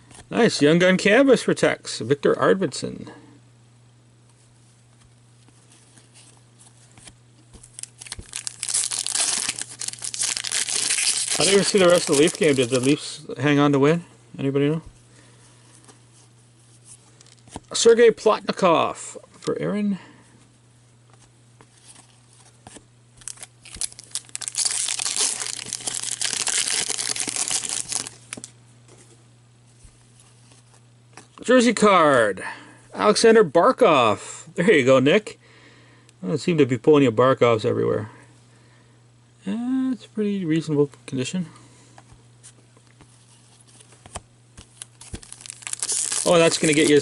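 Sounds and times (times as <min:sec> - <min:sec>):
card wrapper crinkling and tearing: 0:07.0 - 0:13.1, 0:21.8 - 0:28.5, 0:43.5 - 0:47.0.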